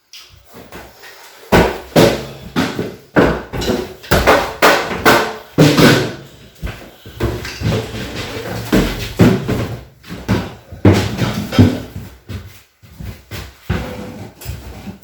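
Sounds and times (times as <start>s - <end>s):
percussion hits: 1.6s - 9.8s.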